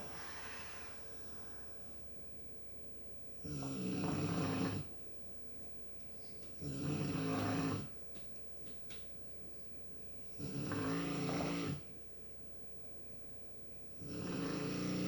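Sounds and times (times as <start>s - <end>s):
person snoring: 0.0s - 1.8s, 10.4s - 11.8s, 14.0s - 15.0s.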